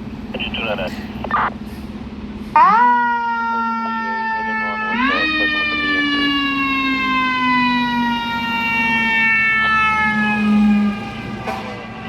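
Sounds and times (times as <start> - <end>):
fire engine siren: 2.5 - 12.0.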